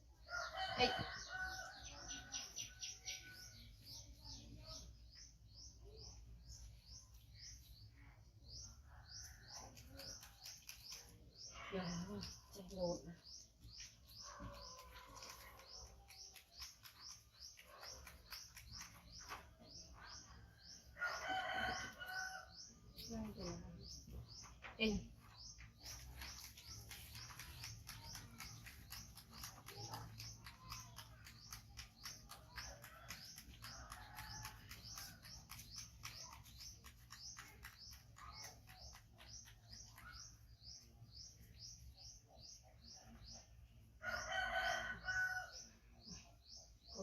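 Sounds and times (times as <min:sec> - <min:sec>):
birds chirping: 0:00.2 - 0:47.0.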